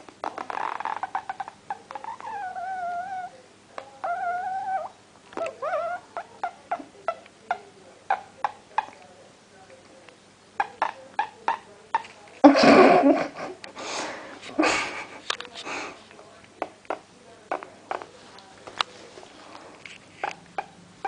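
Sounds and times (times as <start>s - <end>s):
dog whining: 0.8s - 3.4s, 4.0s - 6.9s.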